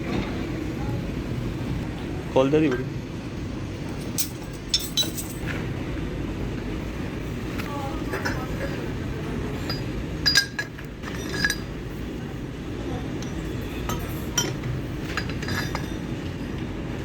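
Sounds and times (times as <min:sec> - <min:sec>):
steady low hum: 0:00.0 - 0:17.0
metal parts clinking: 0:03.9 - 0:05.5, 0:09.7 - 0:11.8, 0:13.2 - 0:16.1.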